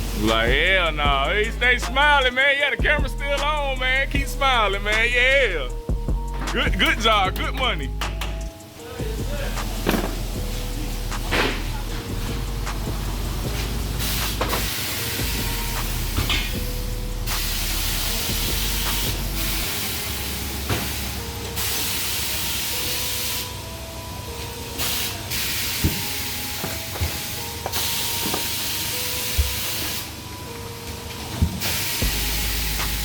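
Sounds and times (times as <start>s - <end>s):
loud hissing spray: 13.8s - 16.2s, 17.2s - 23.5s, 27.2s - 30.2s, 31.6s - 33.0s.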